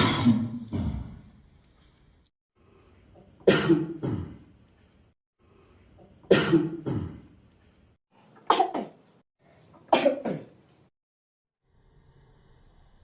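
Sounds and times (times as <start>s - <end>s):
person coughing: 0.0s - 1.1s, 3.4s - 4.4s, 6.3s - 7.2s, 8.4s - 9.0s, 9.9s - 10.6s.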